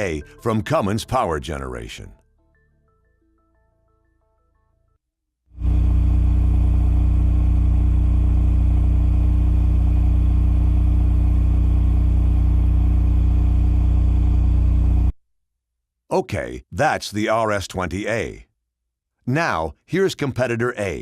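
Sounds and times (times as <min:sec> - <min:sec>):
generator engine drone: 0:05.6 - 0:15.1.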